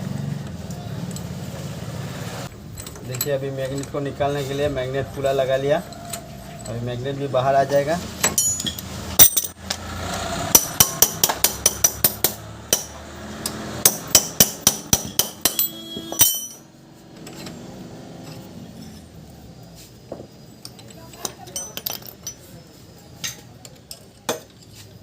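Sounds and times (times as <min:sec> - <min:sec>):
hammer striking metal: 0:08.2 - 0:09.7, 0:10.5 - 0:16.7.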